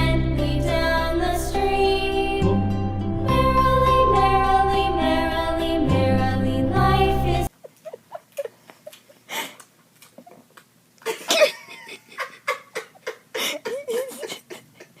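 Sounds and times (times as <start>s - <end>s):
baby giggling: 11.0s - 15.0s.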